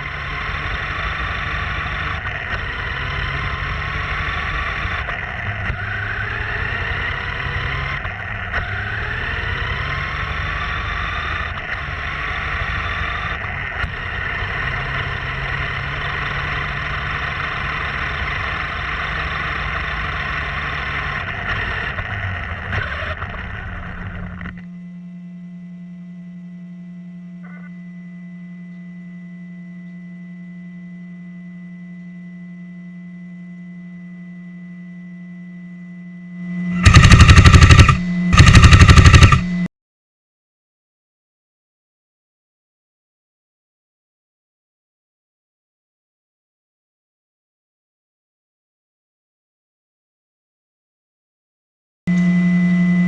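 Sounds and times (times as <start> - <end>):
toy truck motor whining: 0.0 - 24.6, 36.7 - 39.6
steady electronic hum: 8.8 - 39.7, 52.1 - 53.0
wind and driving noise: 36.7 - 39.7.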